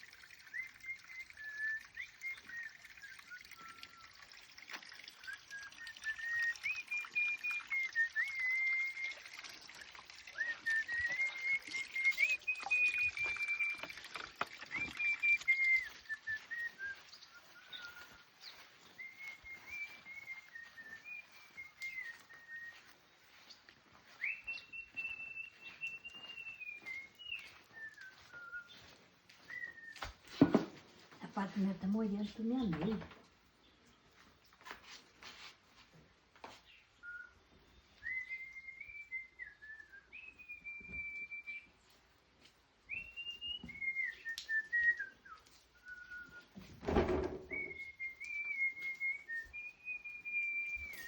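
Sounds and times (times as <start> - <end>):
high whistled tones: 0.4 - 4.2, 5.2 - 9.5, 10.2 - 23.0, 24.1 - 30.3, 37.0 - 41.9, 42.9 - 46.6, 47.4 - 51.0.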